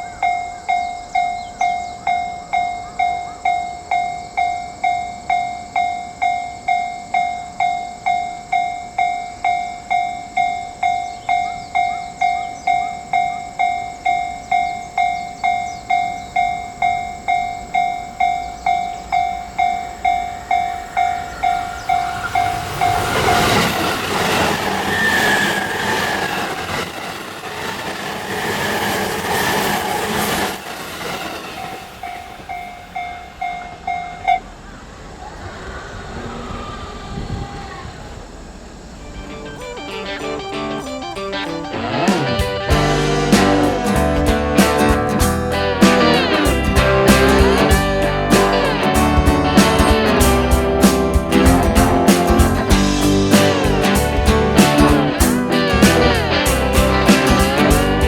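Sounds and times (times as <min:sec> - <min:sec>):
train passing: 0:00.0 - 0:58.0
level crossing alarm bell ringing: 0:00.1 - 0:23.7
rush of train wheels: 0:19.4 - 0:34.0.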